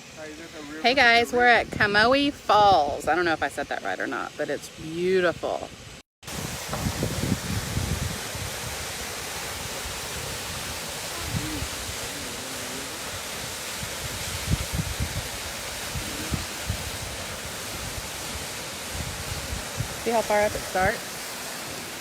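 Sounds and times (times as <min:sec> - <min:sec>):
waterfall rushing: 0:00.0 - 0:01.6, 0:06.3 - 0:22.0
faint voice: 0:11.1 - 0:13.1, 0:16.0 - 0:16.6.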